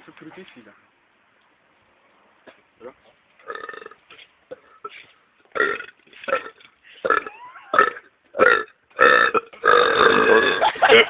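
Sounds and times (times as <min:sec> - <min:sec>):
man burping: 0:03.5 - 0:05.0, 0:05.6 - 0:10.8.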